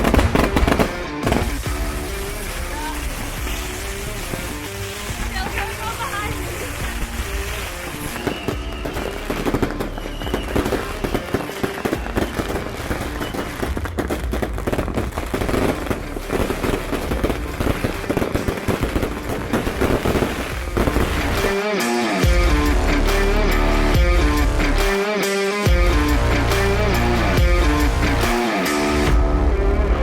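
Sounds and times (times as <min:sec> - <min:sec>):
fireworks crackling and banging: 0:00.0 - 0:23.1.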